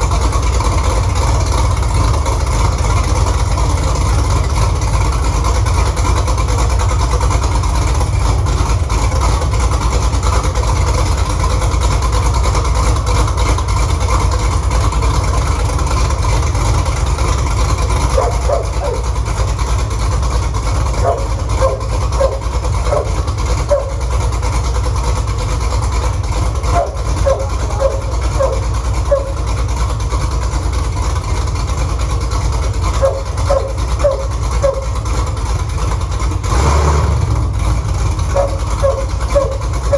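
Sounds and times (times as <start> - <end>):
car engine idling: 0.0 - 39.9.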